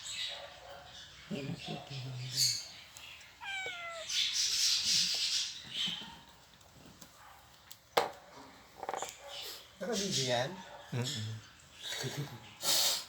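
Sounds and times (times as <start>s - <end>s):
cat meowing: 3.4s - 4.4s.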